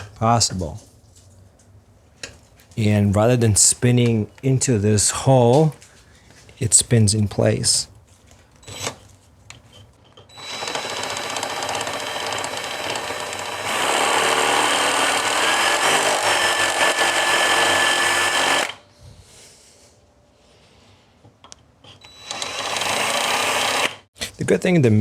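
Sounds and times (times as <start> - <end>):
power drill boring into metal: 10.3 - 18.8, 22.0 - 24.0.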